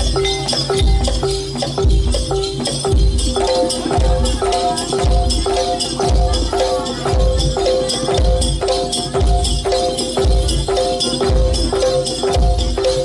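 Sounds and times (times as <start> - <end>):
jingling high percussion: 0.0 - 13.0
sustained tuned melody notes: 0.0 - 13.0.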